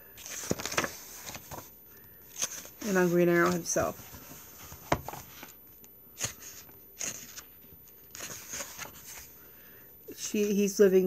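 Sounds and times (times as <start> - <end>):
book pages rustling: 0.2 - 5.6, 6.2 - 9.4.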